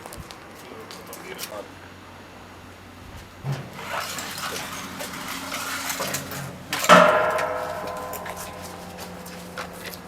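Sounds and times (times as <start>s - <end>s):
ringing metallic clang: 6.8s - 10.0s.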